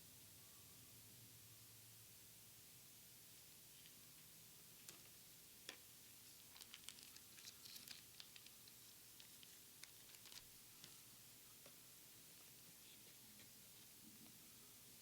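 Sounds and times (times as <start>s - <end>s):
cards and foil wrappers crinkling: 6.2s - 11.0s.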